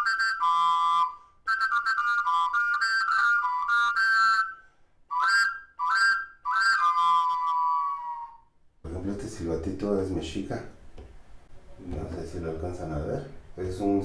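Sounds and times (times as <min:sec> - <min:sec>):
clay whistle wavering notes: 0:00.0 - 0:08.6.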